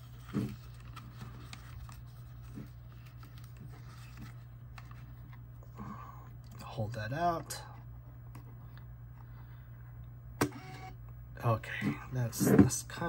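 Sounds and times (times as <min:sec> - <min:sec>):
paper roll clicks and rustles: 0:00.0 - 0:05.4
steady low hum: 0:00.0 - 0:13.0.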